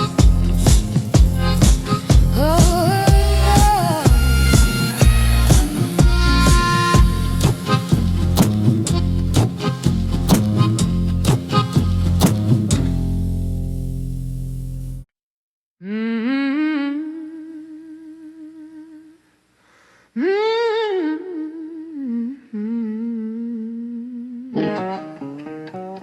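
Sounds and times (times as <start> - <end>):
woman humming: 0.0 - 8.1, 15.8 - 19.2, 20.2 - 25.0
blues song: 0.0 - 13.6, 24.5 - 26.0
guitar: 0.0 - 15.0, 24.5 - 26.0.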